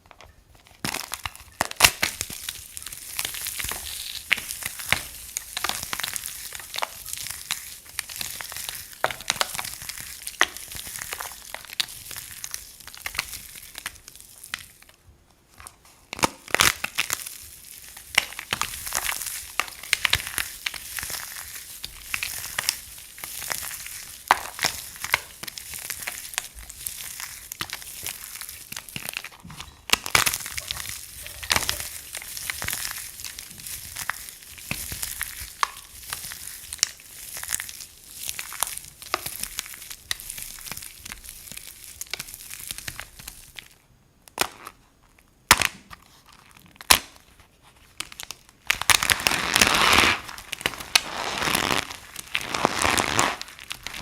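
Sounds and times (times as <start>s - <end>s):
dry soap crunching: 0.0s - 54.0s.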